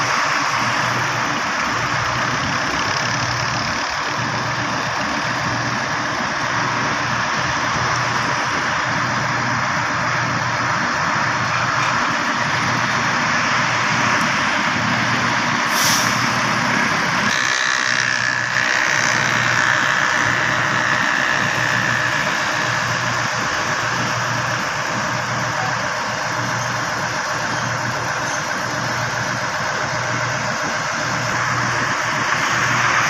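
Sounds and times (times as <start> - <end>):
diesel engine and machinery drone: 0.0 - 33.0
steady high whine: 0.0 - 33.0
hiss burst: 15.7 - 16.4.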